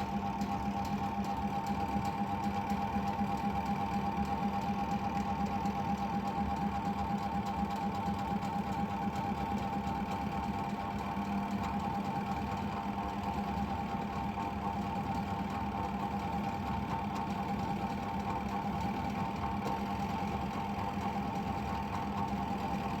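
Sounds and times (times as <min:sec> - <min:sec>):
washing machine motor humming: 0:00.0 - 0:23.0.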